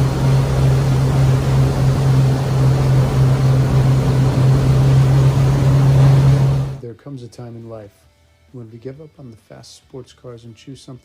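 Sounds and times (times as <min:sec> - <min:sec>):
boat engines droning: 0:00.0 - 0:06.8
water rushing: 0:00.0 - 0:06.8.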